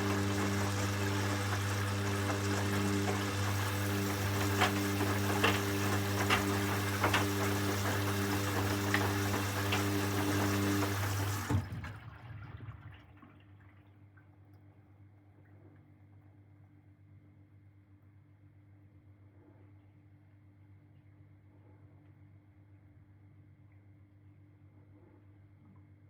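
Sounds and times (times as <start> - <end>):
water rushing: 0.0 - 11.7
washing machine hum: 0.0 - 14.4.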